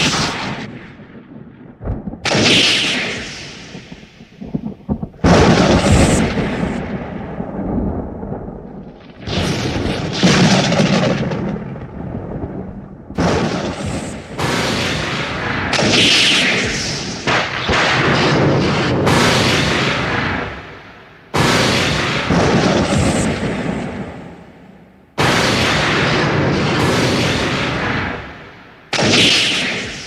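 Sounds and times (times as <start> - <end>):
thunder cracks and rumbles: 0.0 - 30.0.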